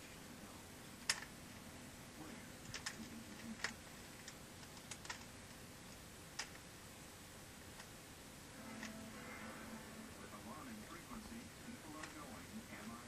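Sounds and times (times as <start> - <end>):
puzzle cube clicking: 1.0 - 1.3, 2.6 - 5.6, 6.3 - 6.6.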